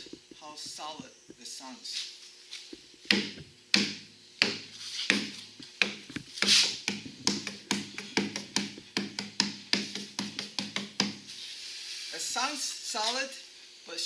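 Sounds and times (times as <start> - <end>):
knuckles knocking on door: 3.1 - 11.2.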